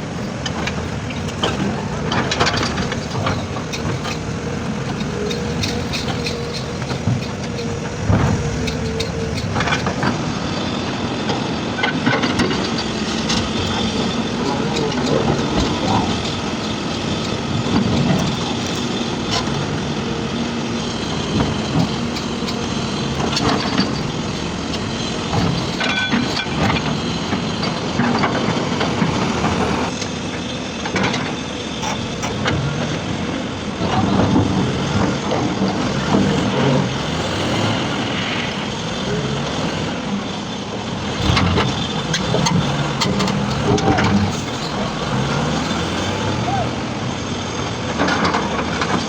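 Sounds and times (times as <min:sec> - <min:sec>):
heavy machine engines under load: 0:00.0 - 0:49.0
rock and steel knocks and clanks: 0:00.2 - 0:10.3, 0:11.8 - 0:29.8, 0:41.0 - 0:46.4.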